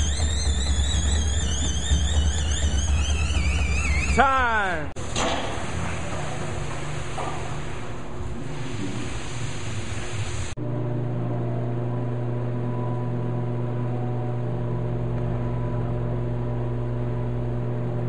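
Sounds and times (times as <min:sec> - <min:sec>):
low hum of held tones: 0:10.6 - 0:18.0.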